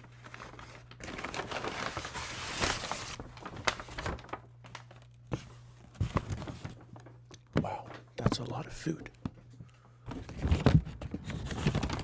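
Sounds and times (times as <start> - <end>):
paper bag crinkling: 0.0 - 5.2, 10.4 - 12.0.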